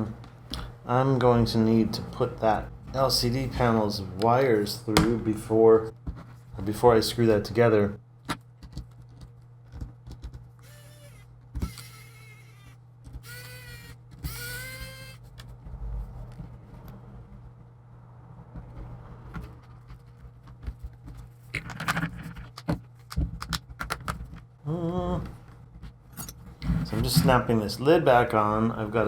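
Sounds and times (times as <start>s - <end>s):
low hum: 0.0s - 23.5s
plastic creaking: 8.6s - 15.6s, 18.8s - 25.3s.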